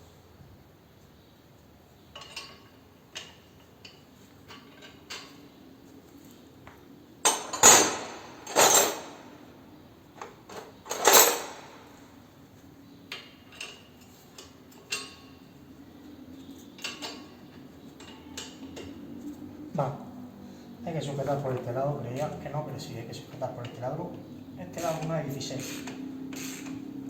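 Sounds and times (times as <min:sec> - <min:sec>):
metal tools clanking on metal: 0:02.1 - 0:05.4, 0:07.2 - 0:09.5, 0:10.2 - 0:12.0, 0:13.1 - 0:15.5, 0:16.5 - 0:19.0, 0:21.6 - 0:26.9.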